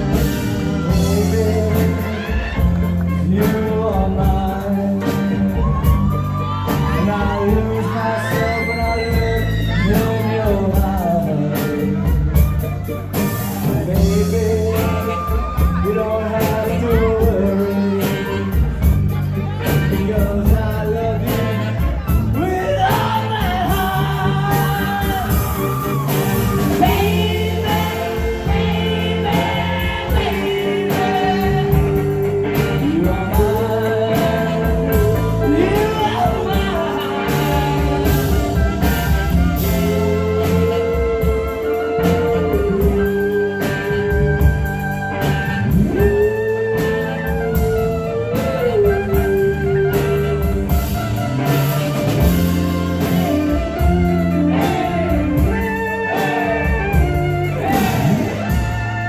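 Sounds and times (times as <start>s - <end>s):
live band playing: 0.0s - 59.0s
person singing long notes: 13.6s - 51.1s.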